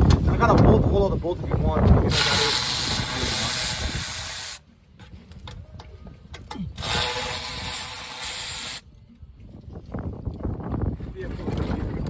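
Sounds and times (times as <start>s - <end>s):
hissing spray: 2.1s - 4.6s, 6.8s - 8.8s.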